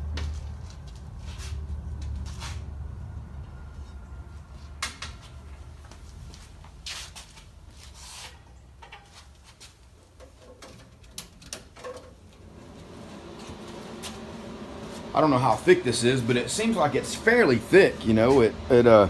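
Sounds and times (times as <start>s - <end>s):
low steady hum: 0.0s - 7.8s, 12.1s - 19.0s.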